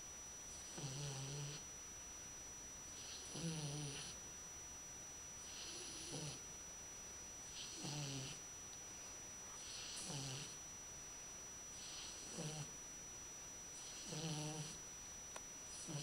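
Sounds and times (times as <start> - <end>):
puppy snoring: 0.5 - 1.7, 2.9 - 4.2, 5.4 - 6.5, 7.4 - 8.4, 9.5 - 10.6, 11.7 - 12.8, 13.7 - 14.8, 15.7 - 16.0.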